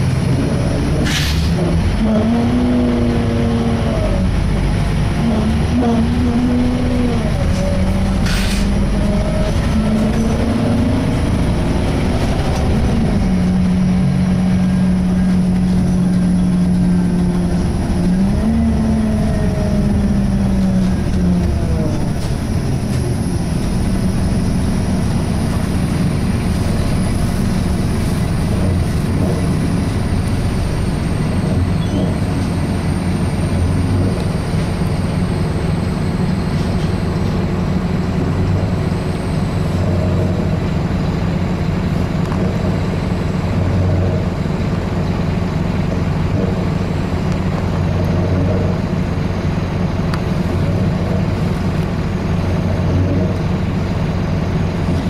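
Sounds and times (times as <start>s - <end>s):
low groan bending in pitch: 0.0s - 41.2s
bus engine and road rumble: 0.0s - 55.0s.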